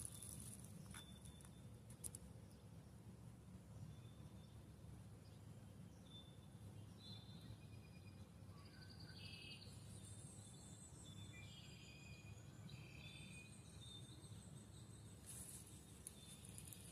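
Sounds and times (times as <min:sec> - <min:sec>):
birds chirping and trilling: 0:05.2 - 0:16.9.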